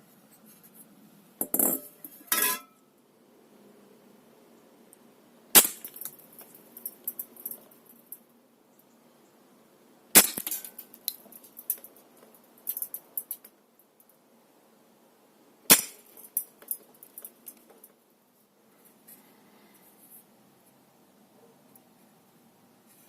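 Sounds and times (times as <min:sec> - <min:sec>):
airsoft rifle shot crack: 0:05.6 - 0:06.0, 0:10.2 - 0:10.6, 0:15.7 - 0:16.1.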